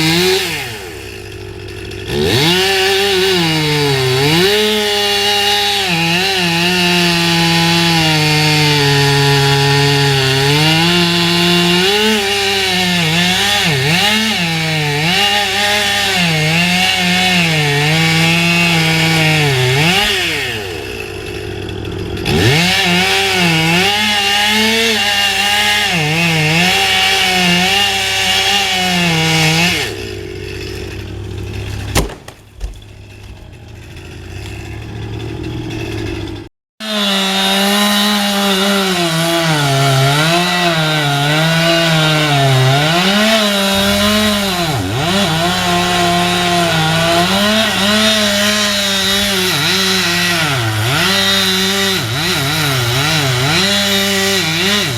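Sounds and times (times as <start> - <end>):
chainsaw cutting wood: 0.0 - 54.9
sharp knocks: 31.6 - 33.5.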